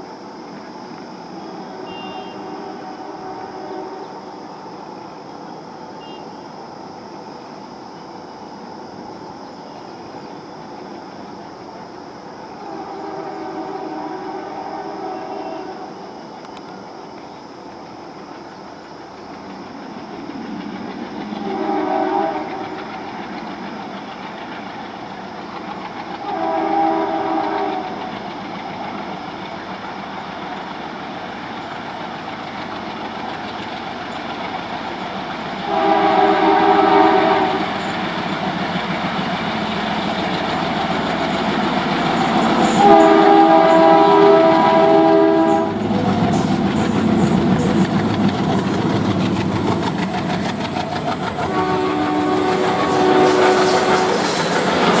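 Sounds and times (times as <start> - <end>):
locomotive horn blasts: 1.4 - 4.2, 12.6 - 15.9, 21.4 - 22.8, 26.2 - 27.9, 35.6 - 37.8, 42.0 - 46.0, 51.4 - 55.0
locomotive engine rumbling: 25.9 - 55.0.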